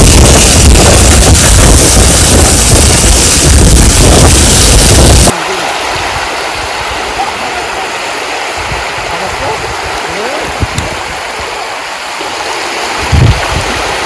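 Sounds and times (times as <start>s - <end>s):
wind buffeting microphone: 0.0s - 5.3s, 8.5s - 11.5s, 12.9s - 14.0s
sea rushing: 0.0s - 14.0s.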